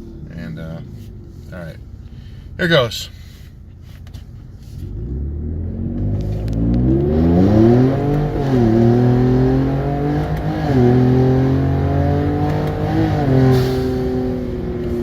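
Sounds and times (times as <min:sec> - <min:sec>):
truck engine accelerating hard: 0:04.8 - 0:15.0.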